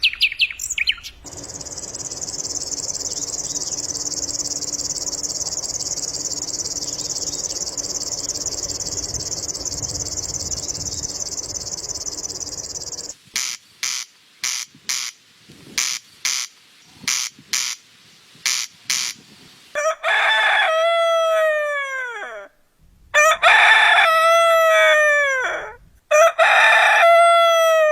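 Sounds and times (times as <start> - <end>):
sharp high chirps: 1.3 - 13.2.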